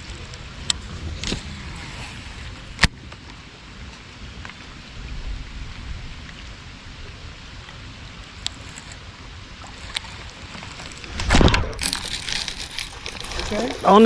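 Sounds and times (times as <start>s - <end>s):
low rumble: 0.0s - 7.5s
water: 0.0s - 14.0s
wind: 0.0s - 14.0s.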